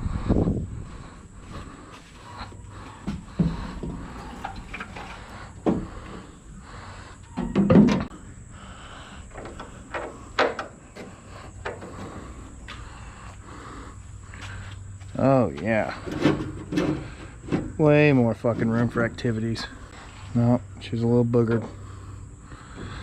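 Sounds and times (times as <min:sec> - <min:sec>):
sheet metal knocks and clunks: 0:03.0 - 0:06.3, 0:07.4 - 0:08.1, 0:15.9 - 0:19.1.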